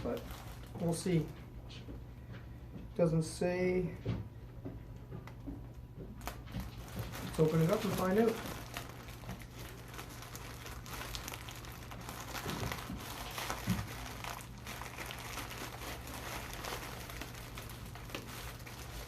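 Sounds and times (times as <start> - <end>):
package wrapping crinkling: 0.0 - 1.4, 6.2 - 19.0.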